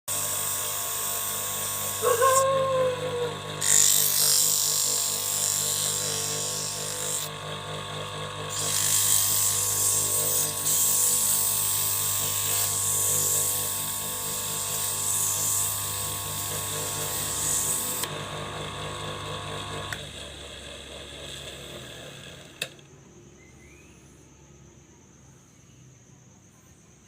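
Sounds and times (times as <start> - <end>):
wood lathe motor hum: 0.1 - 22.8
sandpaper hissing on wood: 8.6 - 13.6
crickets chirping: 22.8 - 27.0.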